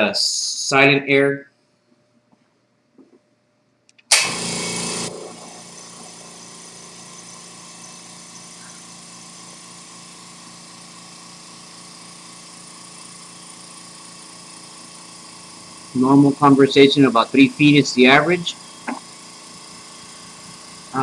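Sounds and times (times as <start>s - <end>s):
air compressor running: 4.1s - 21.0s.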